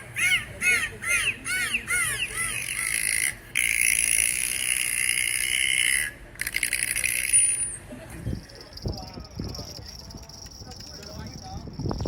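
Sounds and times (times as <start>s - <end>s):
bird calling: 0.0s - 3.8s.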